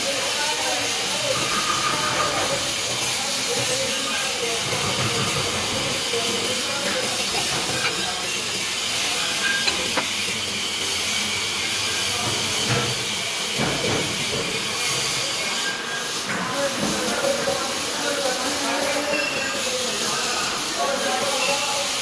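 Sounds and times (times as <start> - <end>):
welding arc crackling hiss: 0.0 - 22.0.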